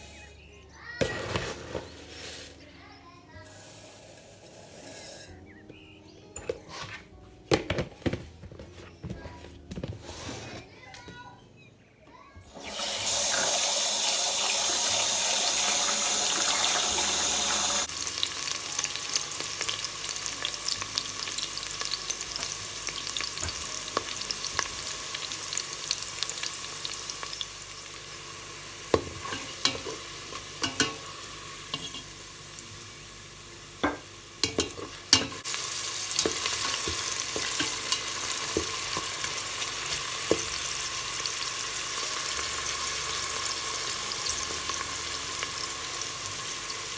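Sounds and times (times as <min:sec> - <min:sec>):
food sizzling in a pan: 0:00.0 - 0:05.3, 0:12.5 - 0:46.9.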